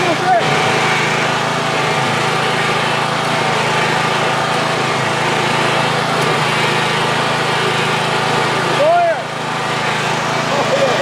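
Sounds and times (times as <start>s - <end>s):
lawn mower engine running: 0.0s - 11.0s.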